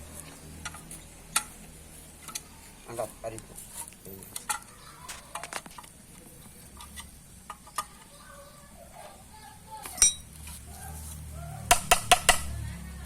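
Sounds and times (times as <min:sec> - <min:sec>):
ringing metallic clink: 0:10.0 - 0:10.3.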